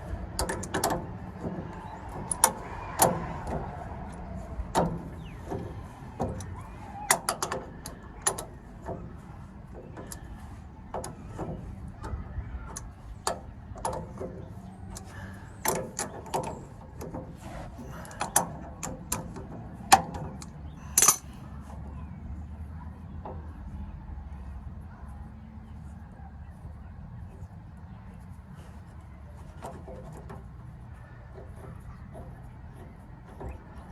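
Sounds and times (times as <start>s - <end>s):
metal tools clicking and clinking: 20.4s - 21.4s
brief metallic clatter: 20.8s - 21.4s.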